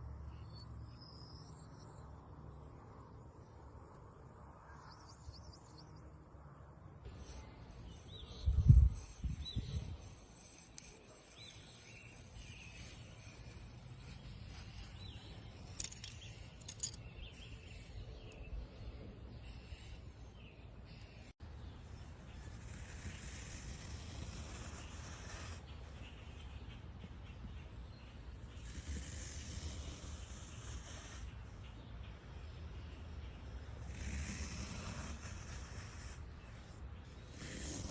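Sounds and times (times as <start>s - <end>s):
sand crackling and hissing: 21.9s - 26.2s, 28.5s - 31.8s, 33.1s - 37.9s.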